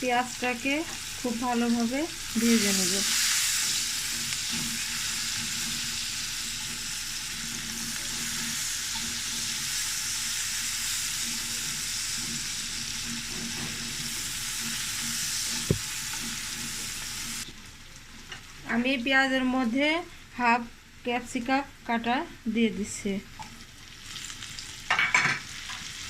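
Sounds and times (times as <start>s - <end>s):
onion sizzling in hot oil: 0.0s - 26.0s.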